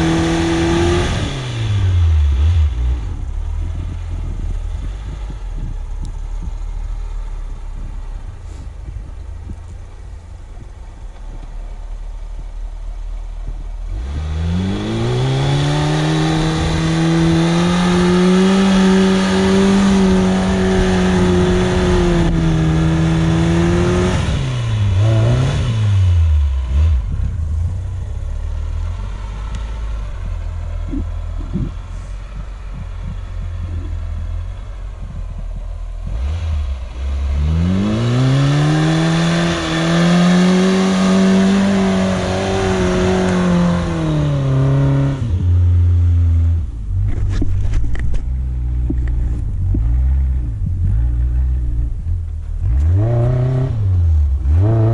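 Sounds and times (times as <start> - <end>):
small engine revving: 0.0 - 7.0, 13.5 - 54.9
engine knocks: 2.7 - 13.9, 26.5 - 37.5, 45.2 - 53.1.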